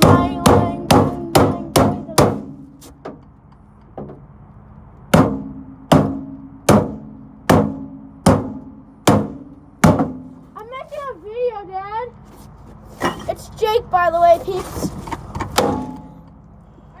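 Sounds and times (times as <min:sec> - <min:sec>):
blows striking microwave casing: 0:00.0 - 0:03.2, 0:05.1 - 0:10.5, 0:15.4 - 0:16.4.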